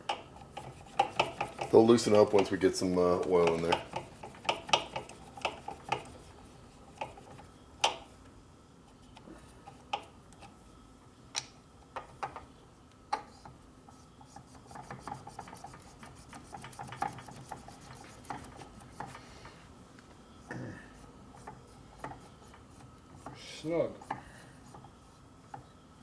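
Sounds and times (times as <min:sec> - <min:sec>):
small ticks and rubbing: 0:00.4 - 0:07.5, 0:13.3 - 0:19.4, 0:21.3 - 0:25.7.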